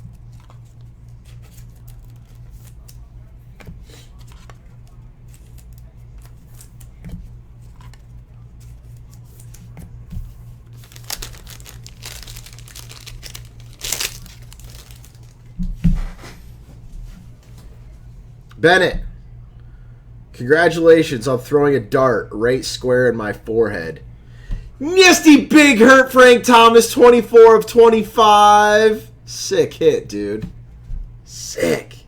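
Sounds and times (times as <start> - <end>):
steady low hum: 0.0 - 24.9
rustling: 10.8 - 15.5
wrappers tearing and crinkling: 10.8 - 15.5.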